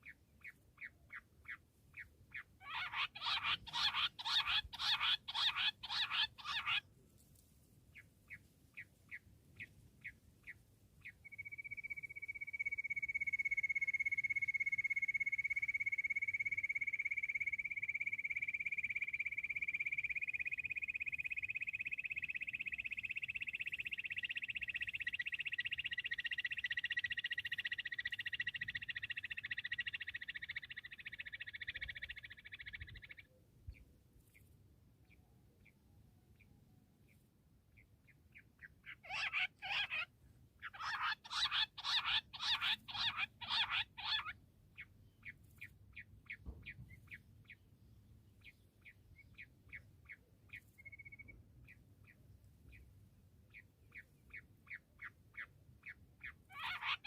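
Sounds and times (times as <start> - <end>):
quail calling: 0.0 - 6.9, 38.6 - 47.6, 53.5 - 57.0.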